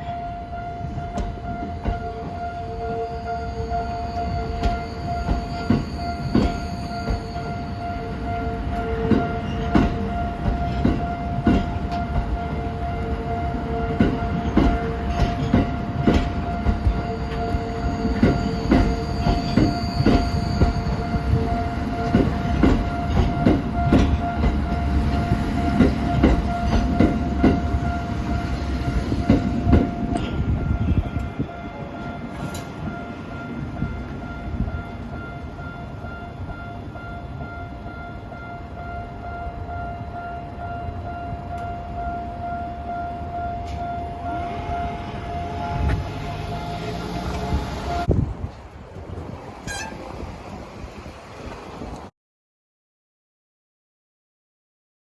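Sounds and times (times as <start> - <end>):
crossing warning alarm ringing: 0.0 - 48.1
train rumbling: 0.0 - 52.1
wheels clacking over rail joints: 13.9 - 35.6.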